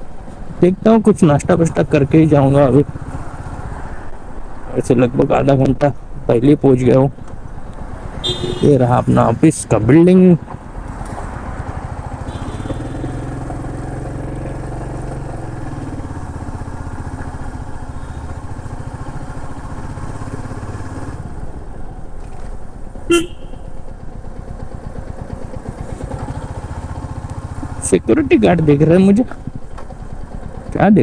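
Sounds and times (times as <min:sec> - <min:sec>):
motorcycle engine thumping: 0:07.2 - 0:09.0, 0:10.4 - 0:20.4, 0:21.2 - 0:30.8
vehicle horn beep: 0:08.2 - 0:09.0, 0:12.2 - 0:13.4, 0:23.1 - 0:23.7.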